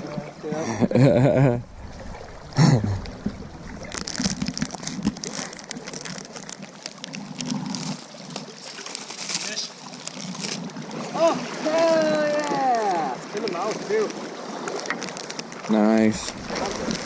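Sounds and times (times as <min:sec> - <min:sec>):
river water running: 0:00.0 - 0:17.0
crackling splashy noise: 0:01.6 - 0:17.0
person shouting: 0:11.1 - 0:13.2
wind on microphone: 0:16.1 - 0:17.0.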